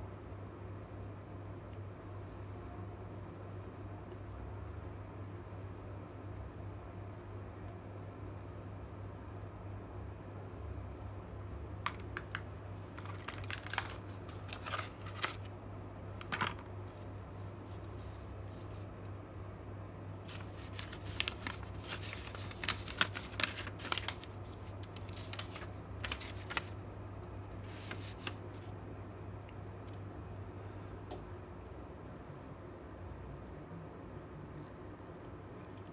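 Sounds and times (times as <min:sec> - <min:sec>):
clicks and rustles of handling: 0:11.7 - 0:19.3, 0:20.0 - 0:28.7.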